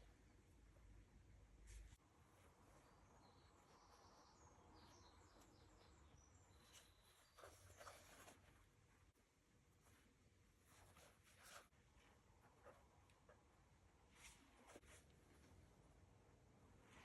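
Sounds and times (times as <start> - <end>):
soft rustle: 1.5 - 3.0, 6.5 - 16.0, 16.7 - 17.0.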